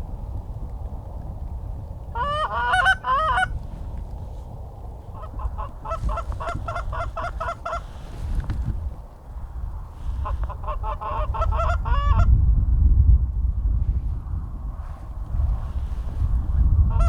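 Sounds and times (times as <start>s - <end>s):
geese honking: 2.2s - 3.6s, 5.1s - 8.2s, 10.0s - 12.3s.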